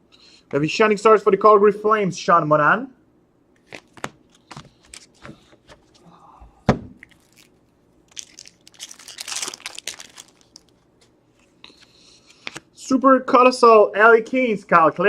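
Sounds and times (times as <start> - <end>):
wrapper tearing and crinkling: 7.0 - 10.8.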